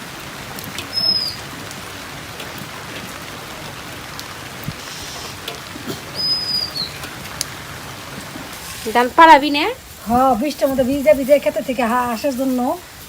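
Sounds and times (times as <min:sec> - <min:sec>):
steady rain hissing: 0:00.0 - 0:13.0.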